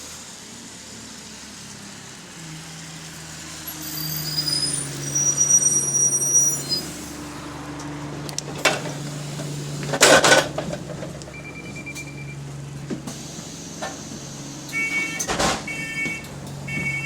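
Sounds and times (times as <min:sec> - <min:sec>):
bus engine idling: 0:00.0 - 0:17.0
air brake hiss: 0:13.1 - 0:15.3.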